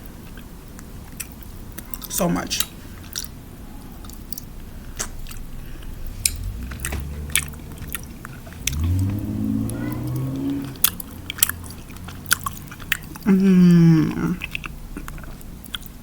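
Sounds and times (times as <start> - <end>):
closed-mouth hum: 0.0 - 16.0
close chewing: 0.2 - 16.0
wet mouth clicks: 4.0 - 16.0.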